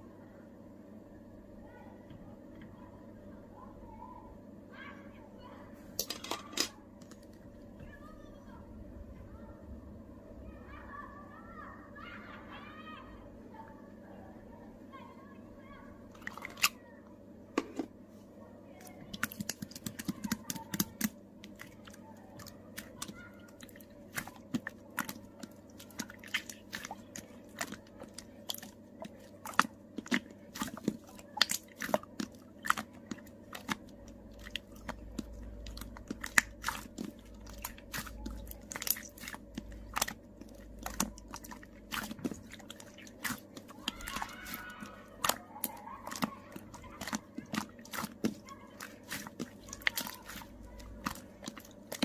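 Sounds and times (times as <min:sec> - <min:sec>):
slime crackling and popping: 0:19.1 - 0:52.0.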